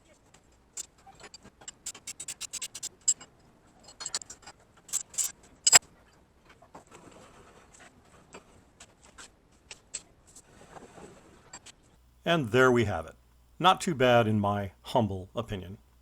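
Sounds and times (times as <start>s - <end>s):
metal parts clinking: 1.2s - 5.8s.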